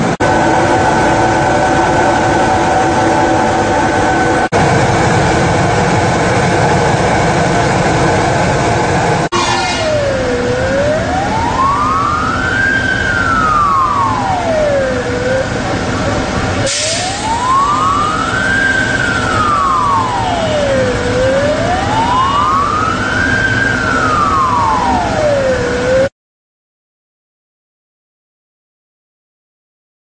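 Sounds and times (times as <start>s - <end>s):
emergency vehicle siren wailing: 0.0s - 26.1s
traffic: 0.0s - 26.1s.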